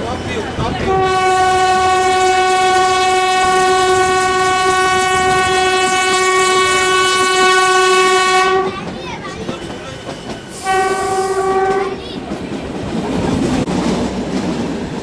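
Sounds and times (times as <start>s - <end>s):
moving train rumble: 0.0s - 15.0s
train horn blast: 0.8s - 8.8s, 10.6s - 12.0s.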